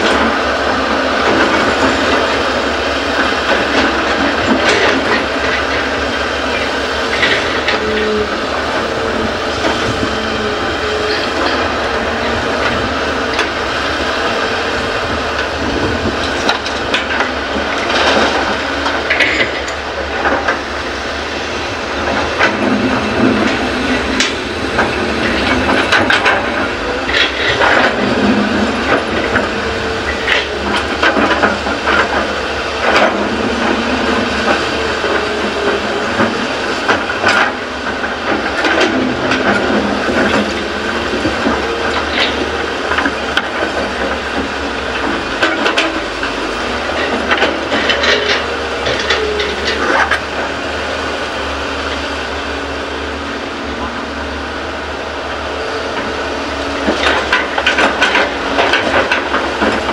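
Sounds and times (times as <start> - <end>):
excavator diesel engine: 0.0 - 59.9
metallic clanks and knocks: 22.0 - 50.5.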